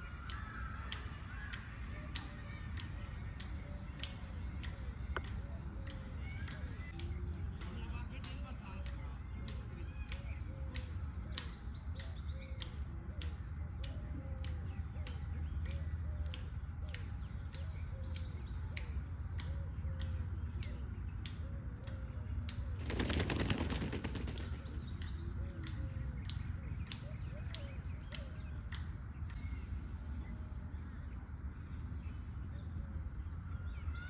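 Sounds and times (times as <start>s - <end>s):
regular clicks: 22.8s - 25.0s
peacock tail feathers rattling: 22.8s - 25.3s.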